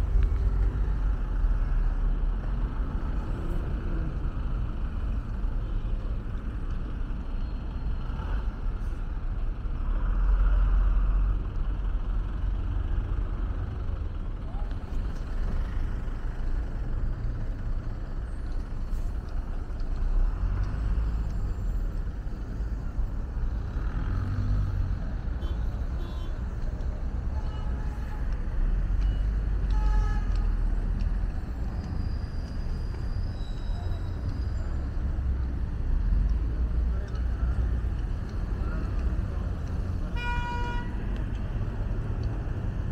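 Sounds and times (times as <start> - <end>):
vehicles passing rumble: 0.0 - 42.9
vehicle horn tooting: 29.7 - 30.4, 40.1 - 41.0.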